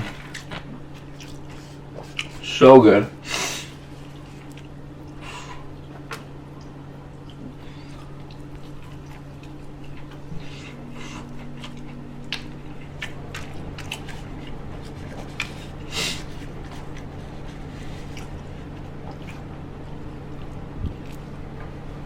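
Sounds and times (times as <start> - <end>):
chewing and wet mouth noises: 0.0 - 2.5, 3.7 - 22.0
steady low hum: 0.0 - 22.0.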